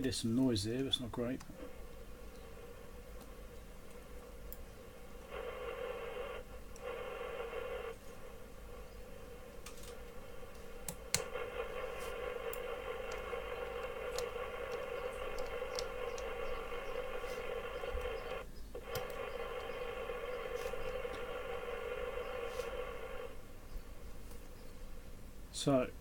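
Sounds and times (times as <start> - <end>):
radio buzzing hiss: 0.0 - 24.2.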